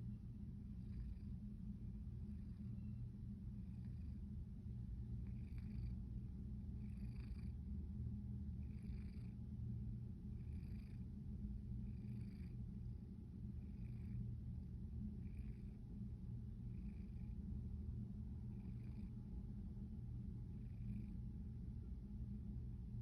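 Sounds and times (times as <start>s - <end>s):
pet snoring: 5.3s - 5.9s, 6.8s - 7.5s, 8.6s - 9.3s, 10.4s - 11.0s, 11.9s - 12.6s.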